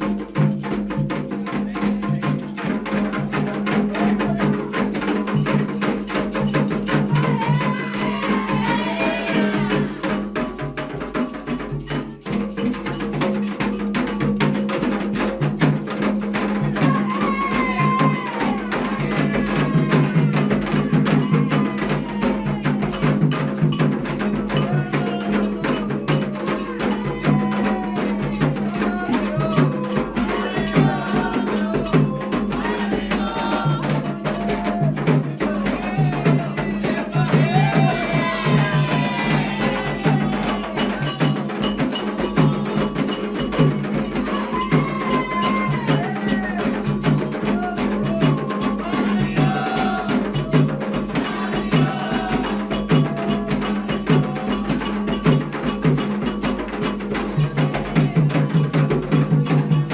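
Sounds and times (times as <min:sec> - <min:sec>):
voices singing a chant: 0:00.0 - 0:13.6, 0:14.4 - 0:59.9
hand drums: 0:00.0 - 0:59.9
bell beat: 0:16.4 - 0:59.9.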